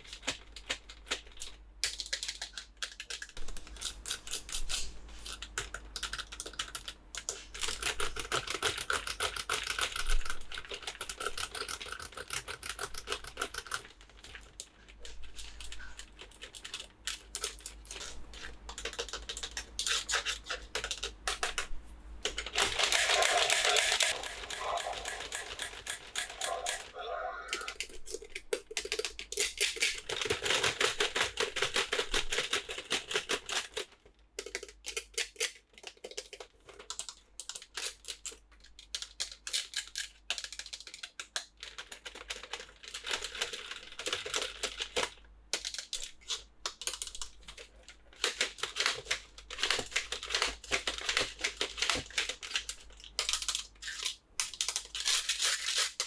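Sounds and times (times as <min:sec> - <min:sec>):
plastic packaging crinkling: 0:45.7 - 0:56.0.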